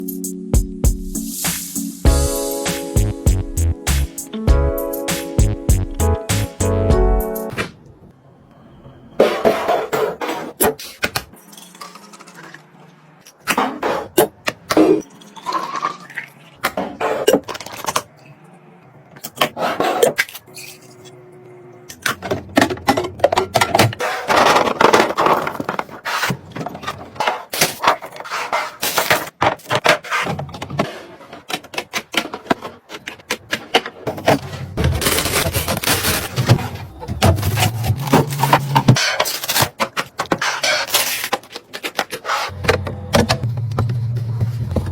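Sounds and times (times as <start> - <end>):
containers and bottles clinking: 31.7 - 43.3.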